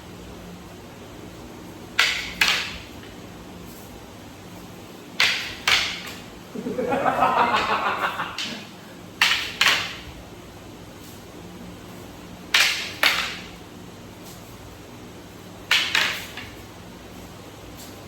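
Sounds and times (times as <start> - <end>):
sticks clacking together: 2.0 - 2.9, 5.2 - 6.3, 7.5 - 10.1, 12.5 - 13.5, 15.7 - 16.6.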